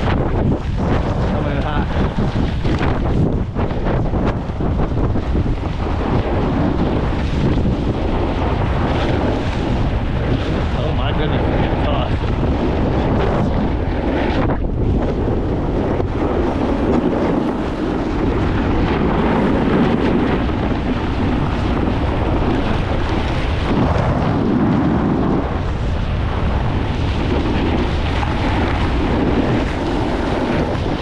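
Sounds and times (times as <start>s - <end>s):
wind rushing over microphone: 0.0s - 31.0s
snowboard scraping icy snow: 15.2s - 18.0s.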